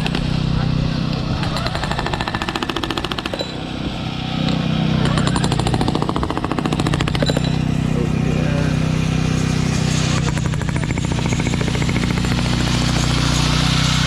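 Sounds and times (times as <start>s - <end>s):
jackhammer pounding: 0.0s - 14.0s
portable generator drone: 7.2s - 14.0s.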